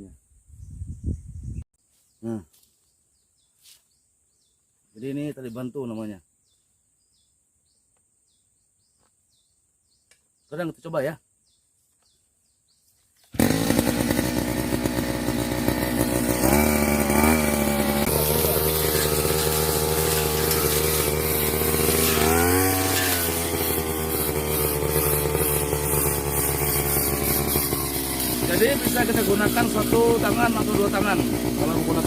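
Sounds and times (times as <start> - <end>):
brush cutter engine running: 13.2 - 32.0.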